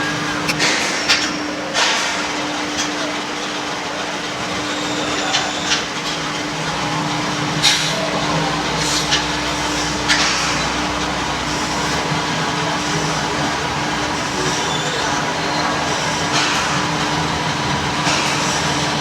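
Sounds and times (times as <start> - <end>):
rc vehicle mechanical hum: 0.0 - 2.4, 3.0 - 19.0.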